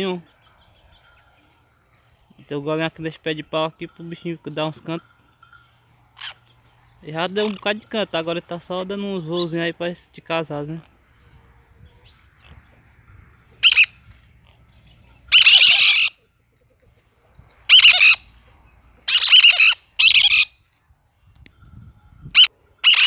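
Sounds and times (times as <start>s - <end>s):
parakeets screeching: 6.1s - 7.8s, 13.6s - 14.0s, 15.3s - 16.2s, 17.7s - 18.3s, 19.0s - 20.6s, 22.3s - 23.0s.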